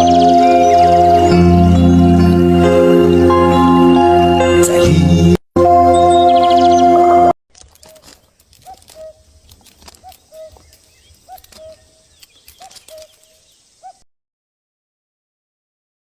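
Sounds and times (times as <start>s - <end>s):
small clicks: 7.5s - 13.4s
faint high insect hiss: 8.2s - 14.0s.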